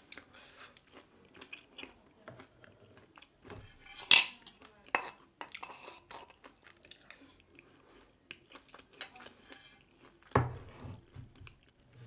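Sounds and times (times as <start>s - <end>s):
person chewing: 0.0s - 3.4s, 5.4s - 10.4s.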